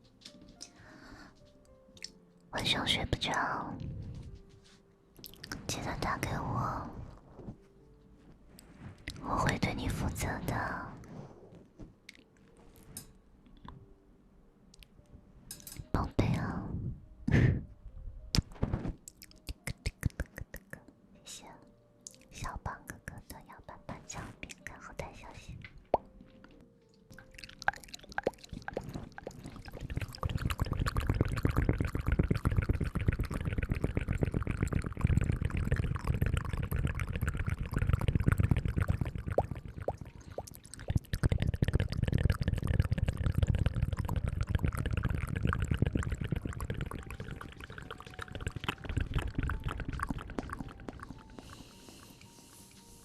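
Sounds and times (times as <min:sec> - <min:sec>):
wet scrubbing of lathered hair: 0:46.1 - 0:52.1.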